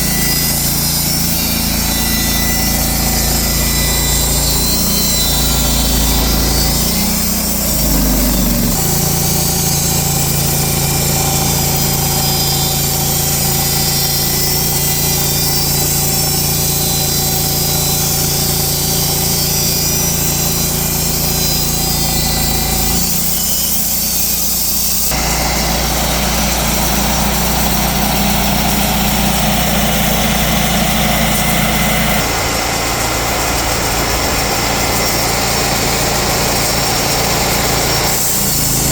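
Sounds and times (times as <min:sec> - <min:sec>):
sawmill engine and saw droning: 0:00.0 - 0:38.9.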